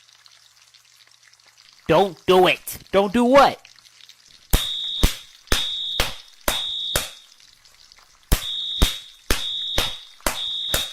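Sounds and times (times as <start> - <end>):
smoke alarm beeping: 4.6 - 7.4, 8.3 - 10.9.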